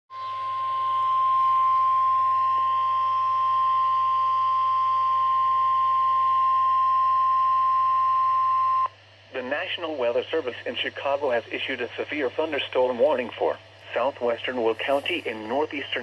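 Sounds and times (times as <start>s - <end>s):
steady warning alarm tone: 0.1s - 16.0s
faint hiss: 8.9s - 16.0s.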